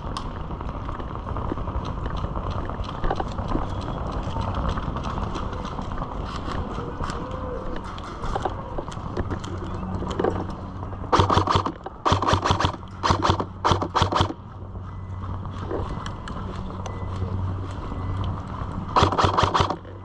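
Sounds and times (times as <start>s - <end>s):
airsoft gun bursts: 11.1s - 14.4s, 19.0s - 19.9s.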